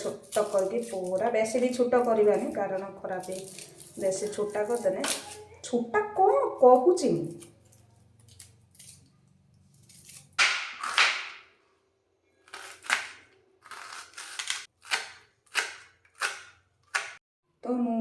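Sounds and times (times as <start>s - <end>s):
knife chopping onion on board: 12.5s - 17.2s.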